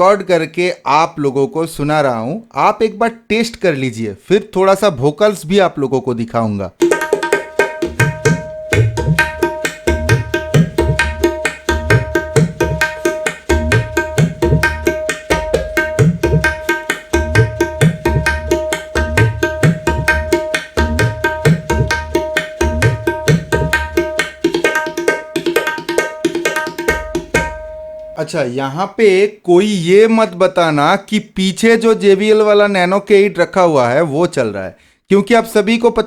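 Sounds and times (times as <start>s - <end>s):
fast hand drum percussion: 6.8s - 27.8s.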